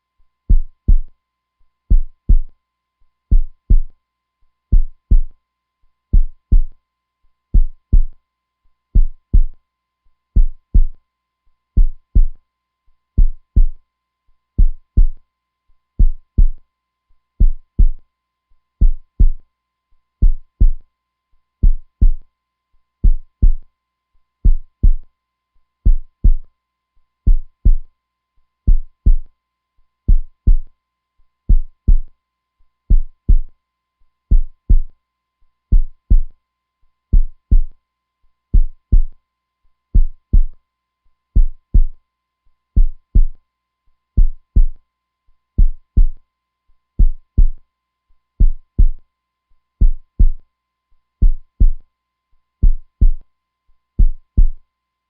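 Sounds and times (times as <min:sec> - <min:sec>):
heartbeat thumps: 0:00.5 - 0:01.1, 0:01.9 - 0:02.5, 0:03.3 - 0:03.9, 0:04.7 - 0:05.3, 0:06.2 - 0:06.7, 0:07.6 - 0:08.1, 0:09.0 - 0:09.6, 0:10.4 - 0:11.0, 0:11.8 - 0:12.4, 0:13.2 - 0:13.8, 0:14.6 - 0:15.2, 0:16.0 - 0:16.6, 0:17.4 - 0:18.0, 0:18.8 - 0:19.4, 0:20.2 - 0:20.8, 0:21.6 - 0:22.2, 0:23.0 - 0:23.6, 0:24.4 - 0:25.0, 0:25.9 - 0:26.4, 0:27.3 - 0:27.9, 0:28.7 - 0:29.3, 0:30.1 - 0:30.7, 0:31.5 - 0:32.1, 0:32.9 - 0:33.5, 0:34.3 - 0:34.9, 0:35.7 - 0:36.3, 0:37.1 - 0:37.7, 0:38.6 - 0:39.1, 0:40.0 - 0:40.6, 0:41.4 - 0:42.0, 0:42.8 - 0:43.4, 0:44.2 - 0:44.8, 0:45.6 - 0:46.2, 0:47.0 - 0:47.6, 0:48.4 - 0:49.0, 0:49.8 - 0:50.4, 0:51.2 - 0:51.8, 0:52.6 - 0:53.2, 0:54.0 - 0:54.6.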